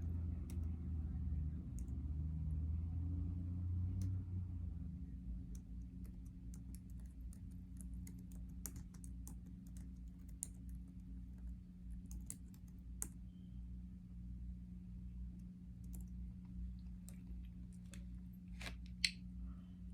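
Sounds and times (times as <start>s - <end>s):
steady low hum: 0.0s - 19.9s.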